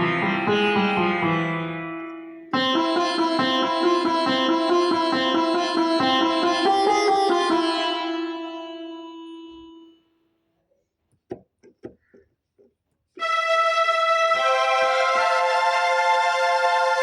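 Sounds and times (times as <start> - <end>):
reedy accordion-like keyboard chord: 0.0 - 10.1, 13.2 - 17.0
keyboard held note: 2.5 - 10.2.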